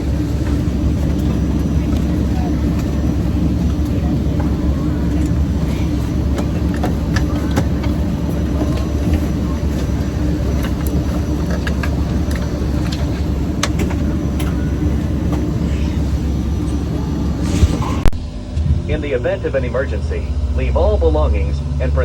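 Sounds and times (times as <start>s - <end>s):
airliner cabin drone: 0.0s - 22.0s.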